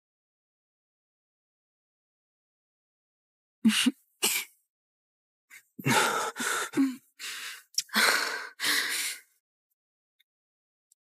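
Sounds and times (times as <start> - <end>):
person sighing and gasping: 5.8 - 9.2.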